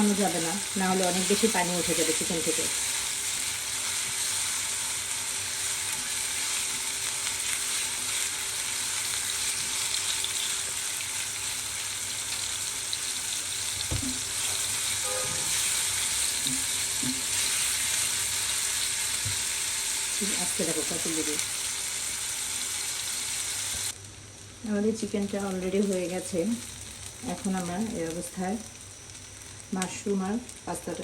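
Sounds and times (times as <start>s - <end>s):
chicken sizzling in oil: 0.0s - 31.0s.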